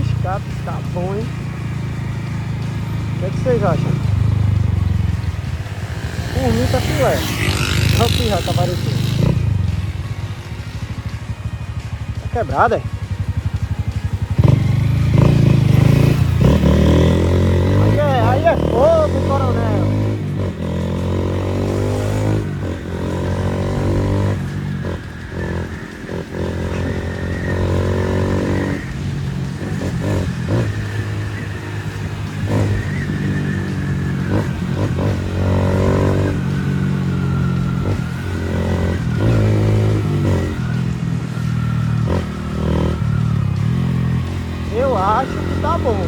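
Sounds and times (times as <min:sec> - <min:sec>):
motorcycle engine revving: 0:00.0 - 0:46.0.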